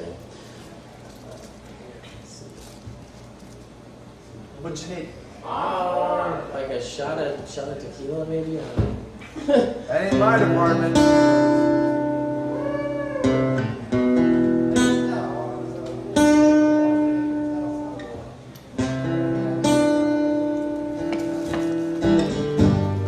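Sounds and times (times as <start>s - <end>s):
acoustic guitar chords ringing: 10.1s - 23.0s.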